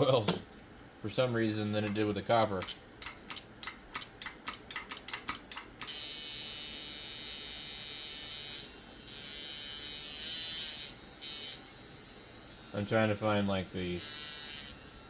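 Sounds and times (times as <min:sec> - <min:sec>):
tattoo machine buzzing: 0:05.8 - 0:15.0.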